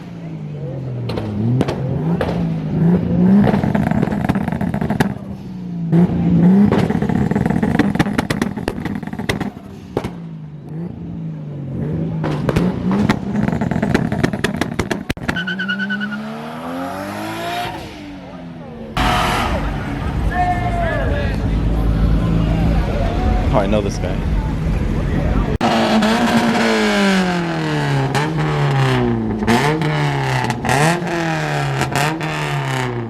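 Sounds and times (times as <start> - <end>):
car engine revving with crackles: 0.0 - 33.0
car accelerating past: 15.3 - 23.5.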